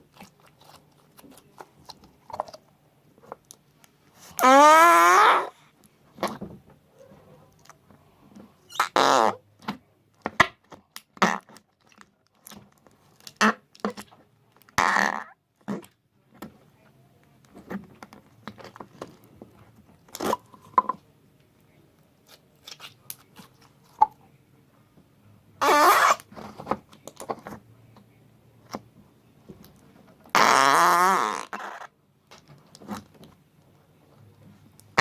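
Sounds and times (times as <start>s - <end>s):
fart sounds: 4.3s - 5.6s, 8.7s - 9.4s, 11.2s - 11.6s, 13.4s - 13.6s, 14.8s - 15.8s, 25.6s - 26.3s, 30.3s - 31.9s.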